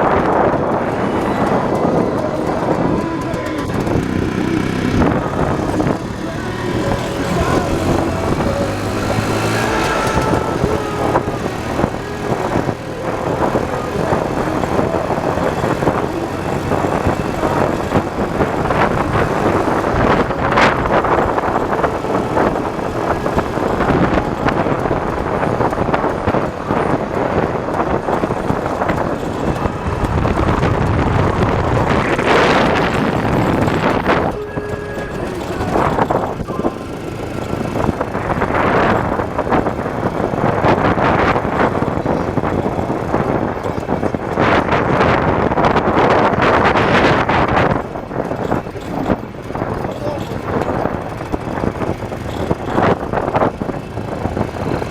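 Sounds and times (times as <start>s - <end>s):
motorcycle engine running: 0.0s - 54.9s
wind and road noise: 0.0s - 54.9s.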